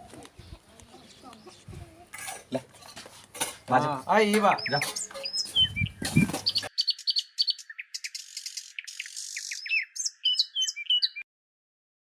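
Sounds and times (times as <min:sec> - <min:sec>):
birds chirping and whistling: 0:04.1 - 0:11.2.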